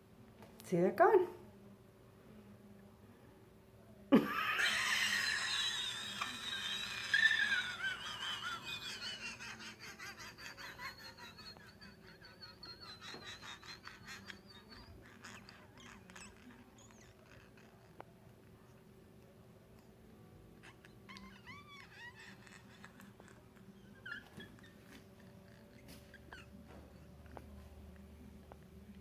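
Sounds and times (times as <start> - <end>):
high-pitched laughter: 4.2 - 18.0, 20.6 - 27.4.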